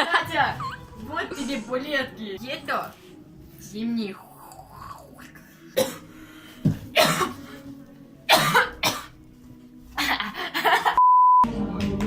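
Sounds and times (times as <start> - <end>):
person coughing: 5.8 - 6.1, 7.0 - 7.5, 8.3 - 9.1.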